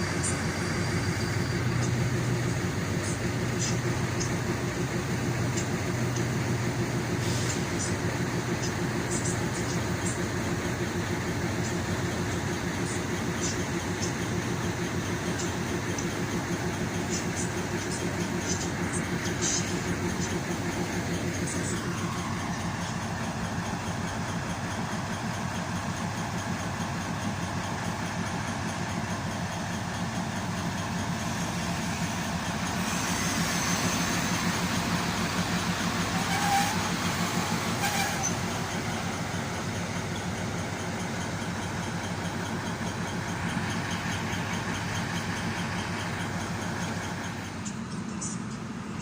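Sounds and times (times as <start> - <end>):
low train hum: 0.0 - 49.0
short squeal: 36.0 - 38.4.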